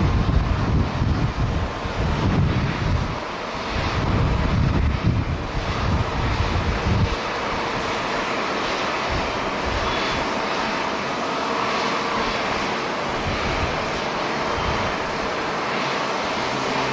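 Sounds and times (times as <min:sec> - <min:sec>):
wind buffeting microphone: 0:00.0 - 0:10.6, 0:11.6 - 0:15.8
jet engines running: 0:00.0 - 0:16.9.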